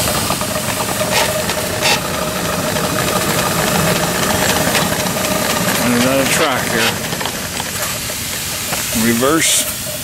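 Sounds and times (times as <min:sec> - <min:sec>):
steam locomotive exhaust beats: 0:00.0 - 0:10.0
steam hiss bursts: 0:06.2 - 0:10.0.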